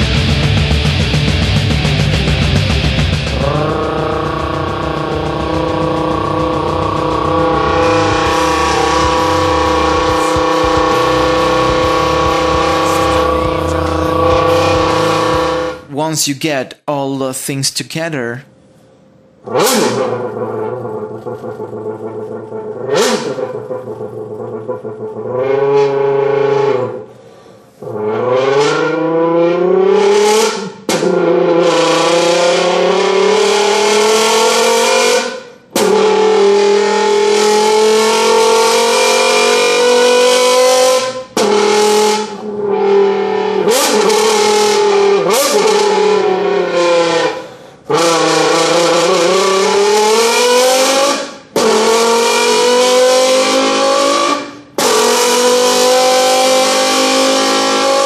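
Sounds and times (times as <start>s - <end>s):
vocal engine imitation: 0.0s - 18.5s.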